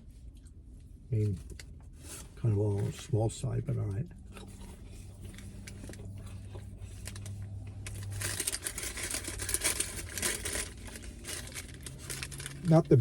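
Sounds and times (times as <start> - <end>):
low steady hum: 0.0 - 13.0
paper packaging rustling: 5.3 - 13.0.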